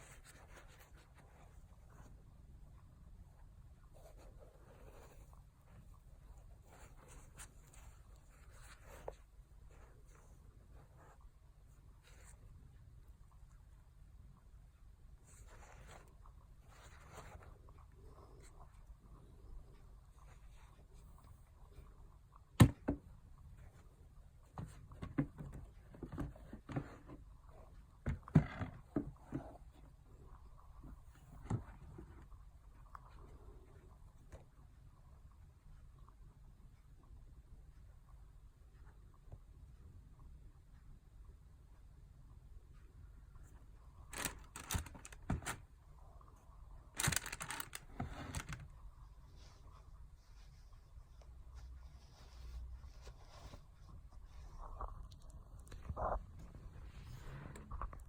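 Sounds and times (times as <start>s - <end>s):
sneaker packaging rustling and clicks: 44.1s - 45.6s, 47.0s - 48.6s.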